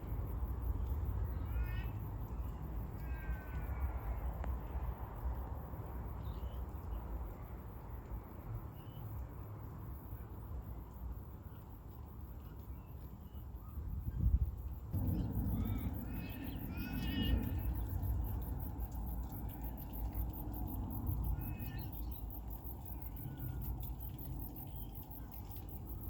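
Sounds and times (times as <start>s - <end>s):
crow-like bird call: 1.4s - 4.2s, 15.0s - 18.0s
low background rumble: 14.0s - 26.0s.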